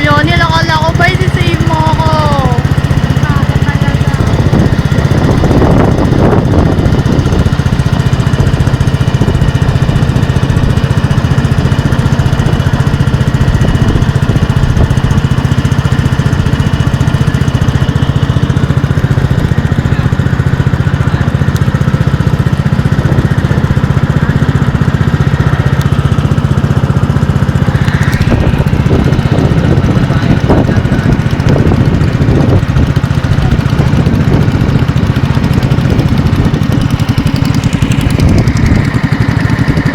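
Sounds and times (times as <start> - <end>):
vehicle engine running: 0.0 - 39.9
short rising whine: 26.9 - 29.9.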